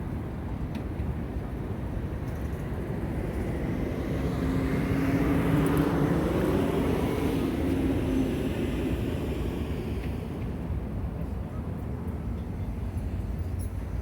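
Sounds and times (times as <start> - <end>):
road noise: 0.0 - 14.0.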